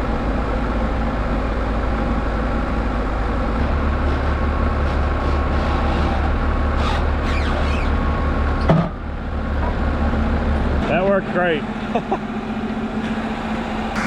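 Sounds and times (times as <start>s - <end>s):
band sawmill cutting log: 5.0s - 8.0s.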